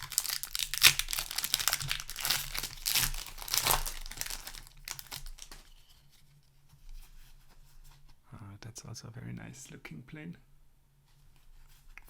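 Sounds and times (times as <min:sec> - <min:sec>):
wrapper crinkling and tearing: 0:00.0 - 0:05.8.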